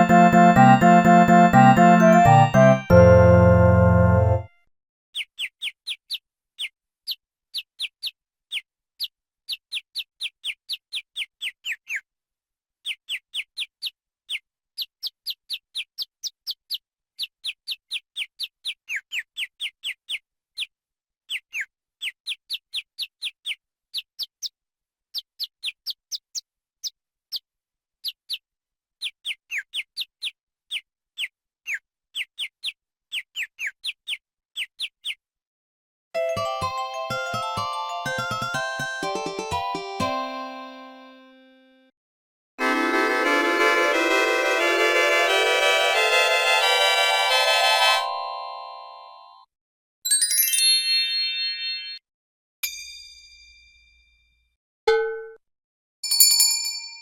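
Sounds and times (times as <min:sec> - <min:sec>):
chirping ringtone: 0:00.0 - 0:04.5, 0:36.2 - 0:41.8, 0:42.6 - 0:49.4.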